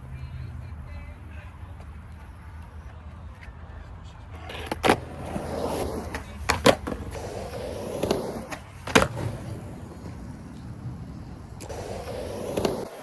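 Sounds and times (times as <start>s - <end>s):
skateboard rolling: 4.2s - 13.0s
skateboard wooden clacks: 4.3s - 13.0s.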